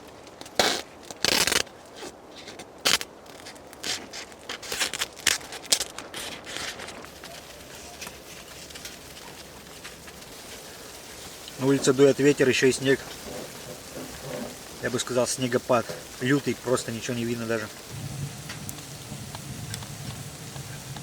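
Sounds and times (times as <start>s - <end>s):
tent fabric crinkling and rustling: 0.0s - 21.0s
faint hiss: 7.0s - 21.0s.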